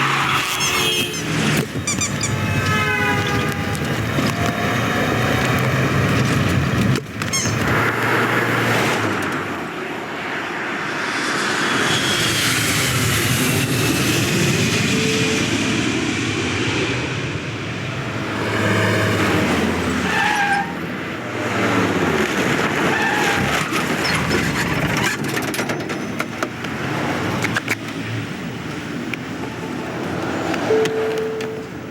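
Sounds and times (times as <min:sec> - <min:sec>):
car engines passing: 0:00.0 - 0:31.9
tyre noise: 0:01.2 - 0:08.2
short pitched tone: 0:30.7 - 0:31.7.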